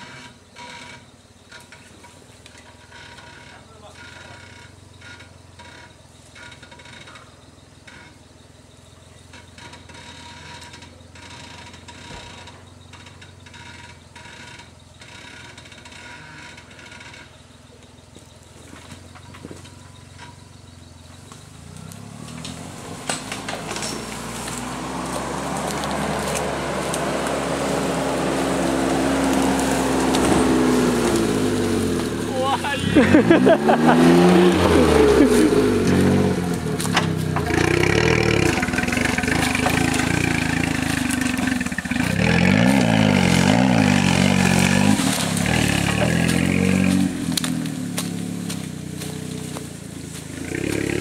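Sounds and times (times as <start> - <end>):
car engine revving: 20.0 - 51.0.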